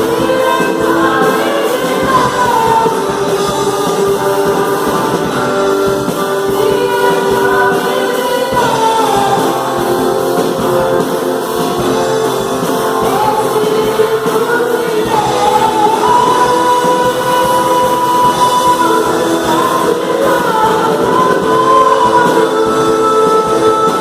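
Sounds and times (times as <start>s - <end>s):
instrumental accompaniment: 0.0s - 24.0s
voices singing long sliding notes: 0.0s - 24.0s.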